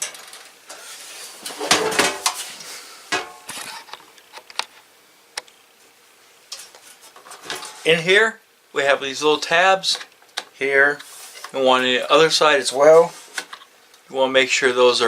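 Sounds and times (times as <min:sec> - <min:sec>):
plastic and metal parts clattering: 0:01.5 - 0:02.4.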